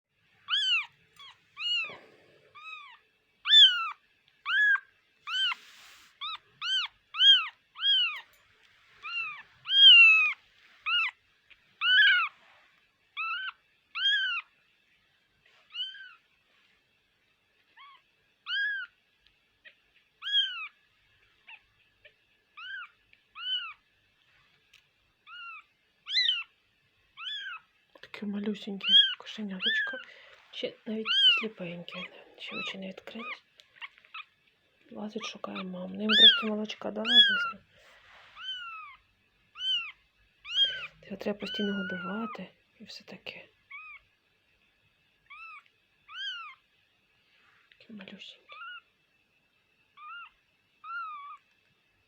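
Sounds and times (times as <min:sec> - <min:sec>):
newborn kitten mewing: 0:00.5 - 0:08.3, 0:09.0 - 0:11.2, 0:11.8 - 0:12.3, 0:13.1 - 0:14.6, 0:15.7 - 0:16.3, 0:17.7 - 0:19.0, 0:19.6 - 0:20.8, 0:21.4 - 0:23.9, 0:25.2 - 0:27.7, 0:28.8 - 0:30.1, 0:31.0 - 0:34.4, 0:35.2 - 0:37.6, 0:38.4 - 0:42.4, 0:43.7 - 0:44.1, 0:45.2 - 0:46.6, 0:48.4 - 0:48.9, 0:49.9 - 0:51.5.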